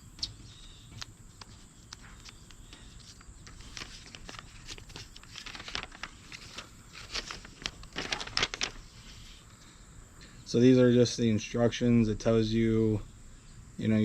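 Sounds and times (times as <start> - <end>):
small items clicking and rustling: 1.0 - 8.8.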